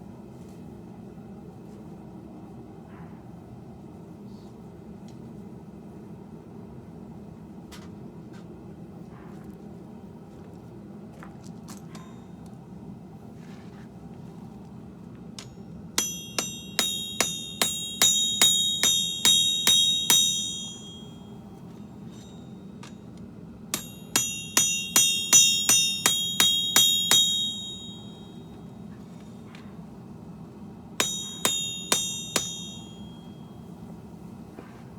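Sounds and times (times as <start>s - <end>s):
hammer striking steel on anvil: 15.4s - 23.1s, 23.7s - 29.4s, 31.0s - 33.7s.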